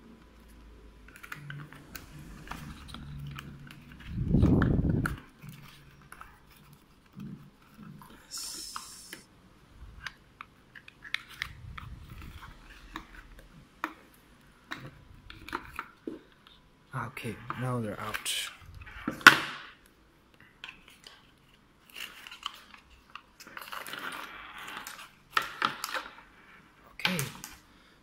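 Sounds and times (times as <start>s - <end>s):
short high hiss: 8.3s - 9.2s.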